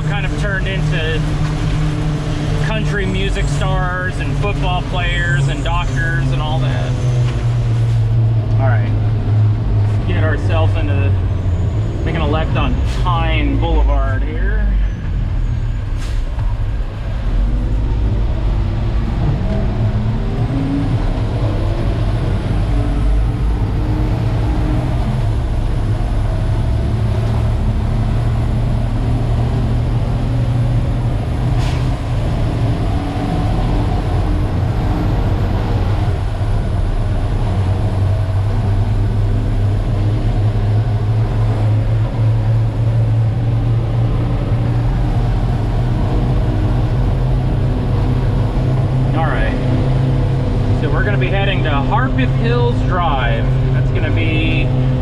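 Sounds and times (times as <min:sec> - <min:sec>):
diesel truck engine droning: 0:00.0 - 0:55.0.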